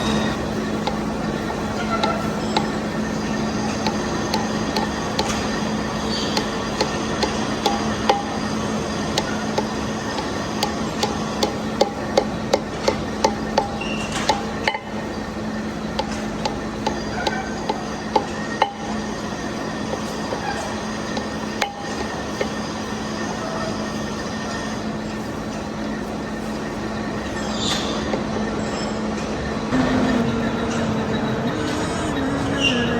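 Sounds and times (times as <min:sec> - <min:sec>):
machine tool humming: 0:00.0 - 0:32.9
sharp metallic clicks and taps: 0:00.8 - 0:03.0, 0:03.7 - 0:15.0, 0:15.9 - 0:19.0.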